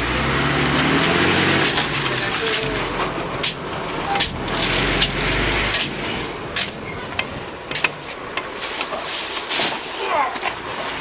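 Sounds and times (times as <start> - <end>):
truck engine rumble: 0.0 - 11.0
sharp knocks and bangs: 1.0 - 9.0.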